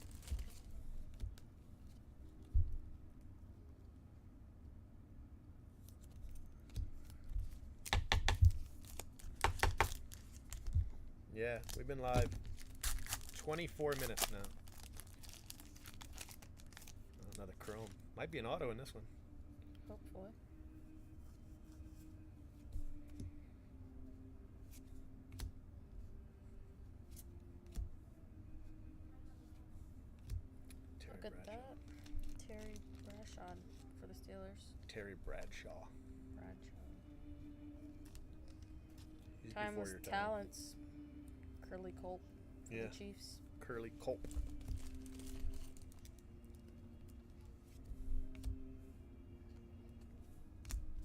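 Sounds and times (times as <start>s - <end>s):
foil wrapper tearing and crinkling: 0.0s - 0.7s, 8.4s - 10.8s, 11.6s - 17.9s, 44.4s - 46.2s
faint steady hum: 0.0s - 51.0s
trading cards clicking and tapping: 7.8s - 10.8s.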